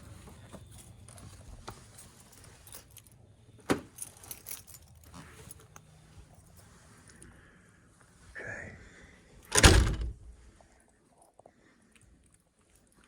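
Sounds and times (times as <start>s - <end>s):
small metal items jingling: 0.7s - 3.2s, 3.9s - 5.9s.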